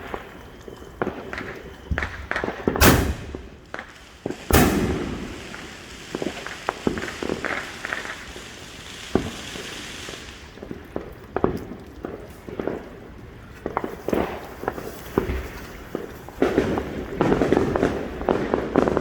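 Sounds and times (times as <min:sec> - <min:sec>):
firework bangs: 0:00.0 - 0:11.7, 0:13.7 - 0:19.0
firework crackling pops: 0:00.0 - 0:19.0
firework hiss: 0:01.9 - 0:10.6.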